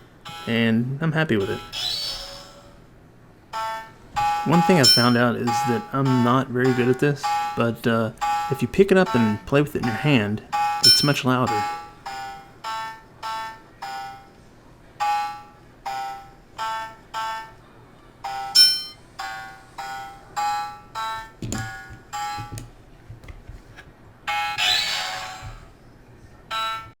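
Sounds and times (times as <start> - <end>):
electronic game beeping tones: 0.2 - 0.7, 1.3 - 2.8, 3.6 - 14.3, 15.0 - 17.6, 18.2 - 22.7, 24.3 - 25.7, 26.5 - 27.0.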